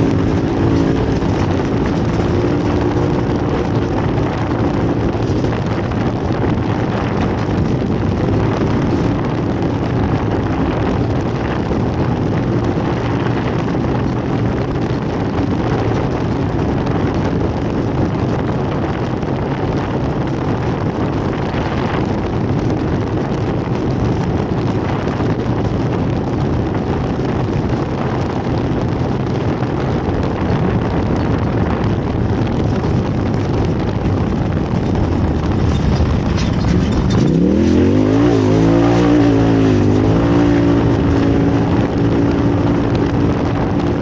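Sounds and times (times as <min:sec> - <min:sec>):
race vehicle engine: 0:00.0 - 0:44.0
wind on microphone: 0:00.0 - 0:44.0.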